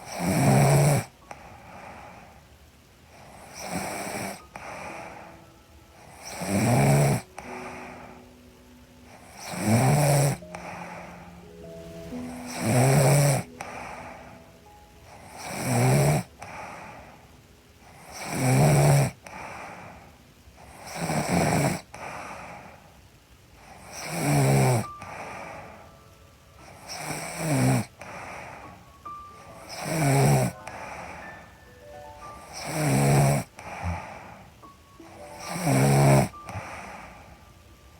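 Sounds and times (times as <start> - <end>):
woman snoring: 0.0 - 1.1, 3.2 - 5.3, 6.0 - 8.2, 9.1 - 11.3, 12.2 - 14.3, 15.1 - 17.2, 17.8 - 20.0, 20.6 - 22.8, 23.7 - 25.7, 26.7 - 28.7, 29.4 - 31.2, 32.4 - 34.3, 35.1 - 37.3
soft breathing: 1.2 - 3.7, 4.3 - 6.4, 10.3 - 15.5, 16.2 - 18.2, 21.8 - 24.1, 24.8 - 35.6, 36.3 - 37.9.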